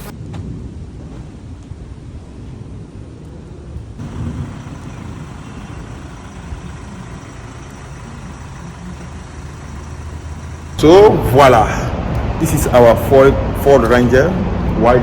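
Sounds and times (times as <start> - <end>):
vehicle engine rumbling: 0.0 - 15.0.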